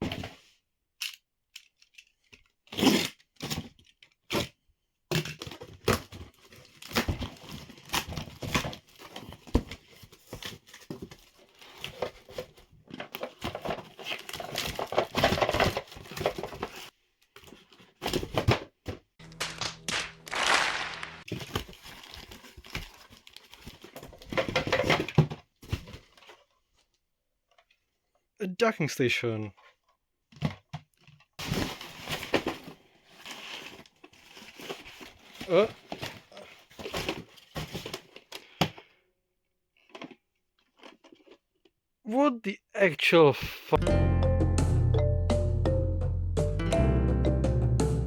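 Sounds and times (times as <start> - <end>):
packaging crinkling and tearing: 5.8 - 16.9, 19.2 - 24.9, 31.4 - 38.4, 39.8 - 41.5.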